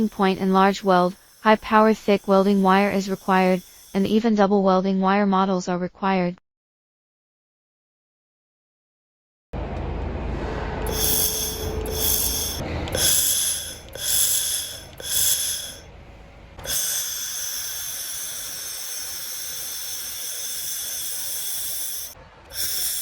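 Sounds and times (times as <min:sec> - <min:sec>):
laser welding hiss and crackle: 0:00.0 - 0:04.2, 0:10.9 - 0:15.9, 0:16.7 - 0:23.0
steady high tones: 0:00.0 - 0:04.3, 0:09.6 - 0:23.0.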